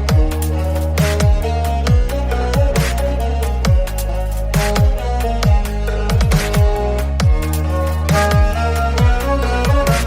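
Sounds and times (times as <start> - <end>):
synth bass: 0.0 - 10.0
synth chords: 0.0 - 10.0
booming kick drums: 4.8 - 7.5.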